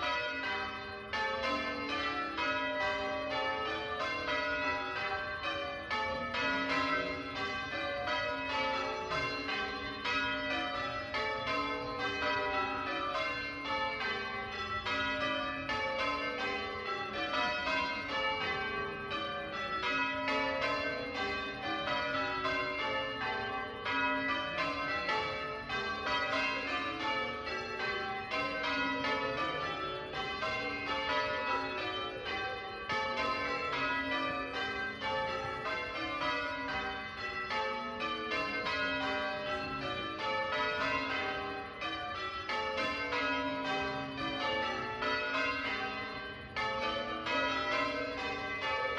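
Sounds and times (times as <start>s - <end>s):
church bells ringing: 0.0s - 48.9s.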